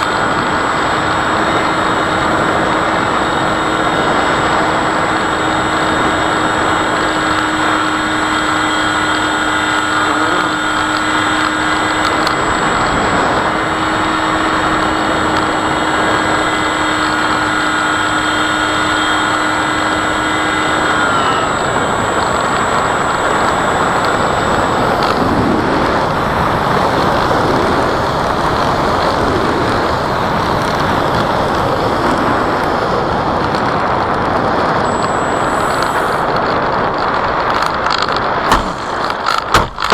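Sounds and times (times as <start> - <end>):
electric motor whining: 0.0 - 39.9
wind rush: 19.3 - 39.9.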